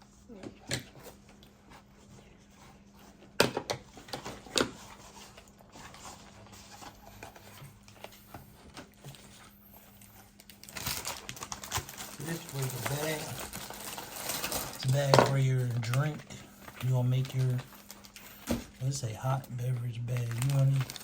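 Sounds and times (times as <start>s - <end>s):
plastic packaging crinkling: 4.2s - 21.0s.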